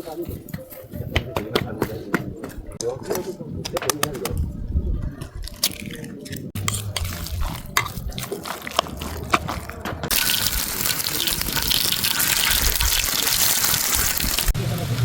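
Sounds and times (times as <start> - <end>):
food sizzling in hot oil: 10.1 - 15.0.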